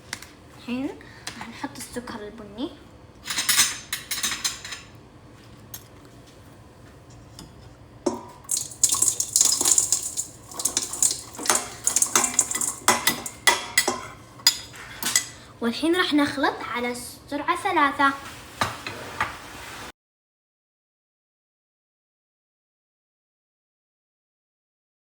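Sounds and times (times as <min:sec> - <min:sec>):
spoon scraping and clinking bowl: 0:08.1 - 0:15.4.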